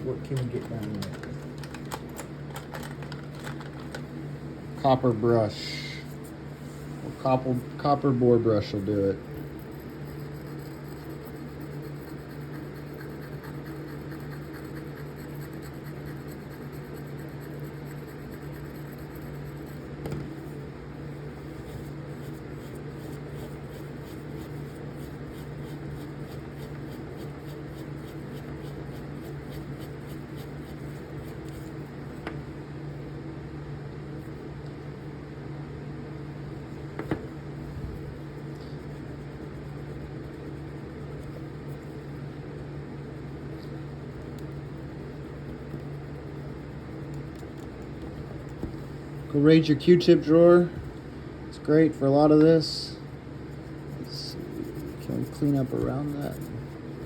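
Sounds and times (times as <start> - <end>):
ventilation hum: 0.0 - 57.0
brush scratching metal blade: 8.7 - 19.9, 21.4 - 31.8, 53.6 - 56.8.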